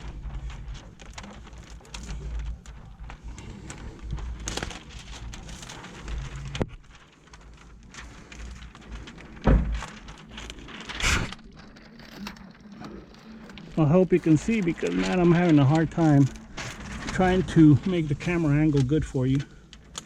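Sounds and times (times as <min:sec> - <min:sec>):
film rustling and scraping: 0:00.0 - 0:20.0
loud thuds: 0:09.4 - 0:09.9.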